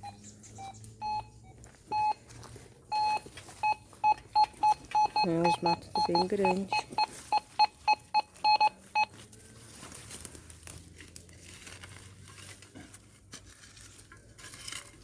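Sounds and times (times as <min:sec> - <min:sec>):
metal detector short beeps: 0:00.0 - 0:02.2, 0:02.9 - 0:09.1.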